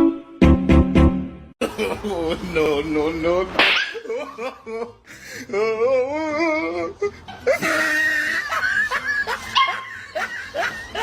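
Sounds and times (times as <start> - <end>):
dog crying: 9.4 - 10.2.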